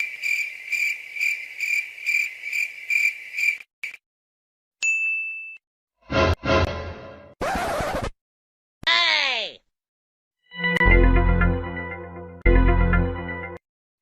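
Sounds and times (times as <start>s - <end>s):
bright ding: 4.8s - 5.6s.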